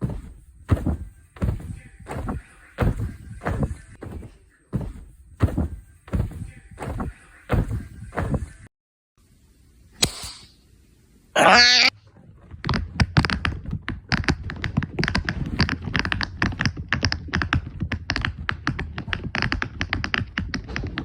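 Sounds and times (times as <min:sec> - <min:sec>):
sharp click: 0:10.0 - 0:10.6.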